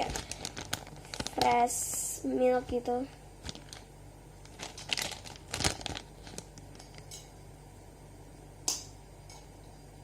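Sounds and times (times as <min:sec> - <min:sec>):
packaging rustling and tapping: 0:00.0 - 0:01.6, 0:03.4 - 0:03.8, 0:04.4 - 0:07.1.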